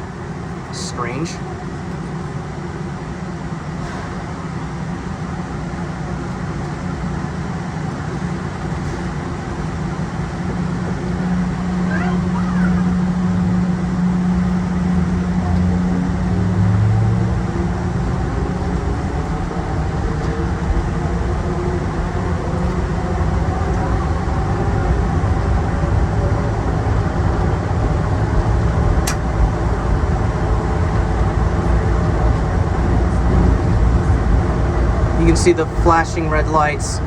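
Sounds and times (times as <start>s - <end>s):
train motor hum: 0.0s - 37.0s
train rumbling through tunnel: 0.0s - 37.0s
sharp click: 29.0s - 29.3s.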